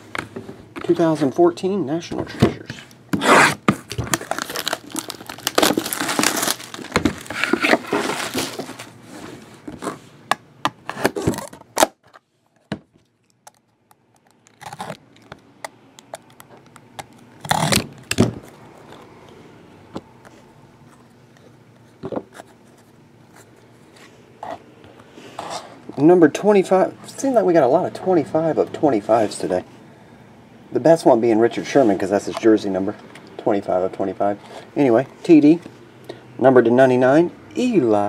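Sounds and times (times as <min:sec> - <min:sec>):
plastic wrapping crinkling and tearing: 0:03.8 - 0:09.0, 0:14.2 - 0:15.4.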